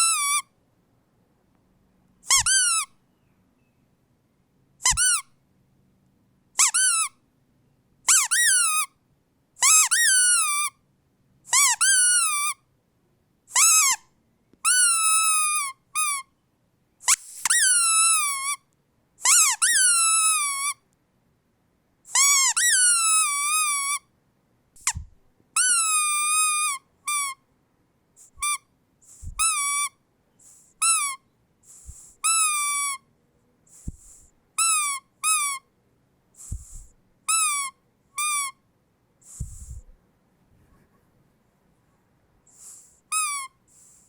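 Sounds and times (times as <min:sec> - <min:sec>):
squeaky dog toy squeaking: 0:00.0 - 0:00.5, 0:02.2 - 0:03.0, 0:04.8 - 0:05.4, 0:06.6 - 0:07.2, 0:08.0 - 0:09.0, 0:09.6 - 0:10.8, 0:11.5 - 0:12.6, 0:13.5 - 0:16.3, 0:17.0 - 0:20.8, 0:22.1 - 0:24.1, 0:24.8 - 0:27.5, 0:28.2 - 0:33.1, 0:33.7 - 0:35.8, 0:36.4 - 0:38.6, 0:39.2 - 0:39.9, 0:42.5 - 0:44.0
breathy hisses: 0:29.0 - 0:29.4, 0:30.3 - 0:30.8, 0:31.6 - 0:32.3, 0:33.7 - 0:34.3, 0:36.4 - 0:37.0, 0:39.2 - 0:40.0, 0:42.5 - 0:44.0.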